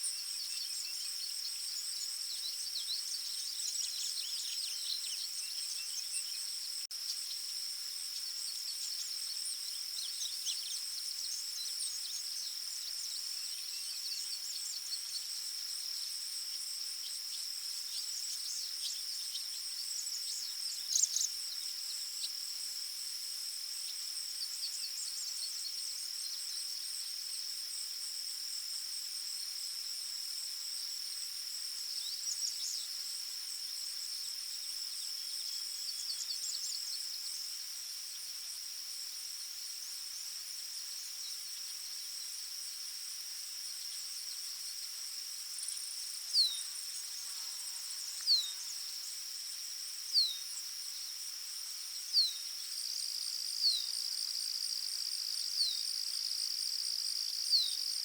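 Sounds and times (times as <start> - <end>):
small birds chirping: 0.0 - 22.4, 45.6 - 49.1
high-pitched insect trill: 0.0 - 58.0.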